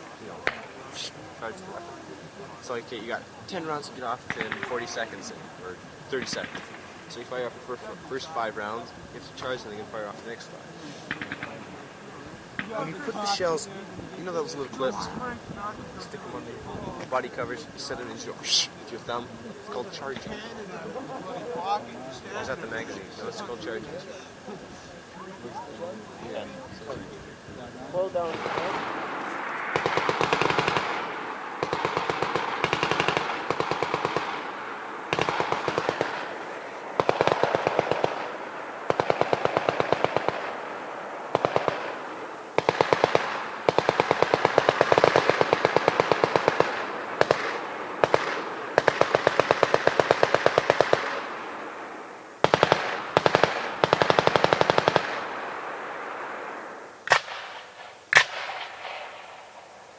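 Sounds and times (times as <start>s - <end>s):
single sharp gunshots: 28.3s - 40.6s, 57.0s - 59.3s
machine gun bursts: 28.3s - 51.4s, 52.4s - 55.4s.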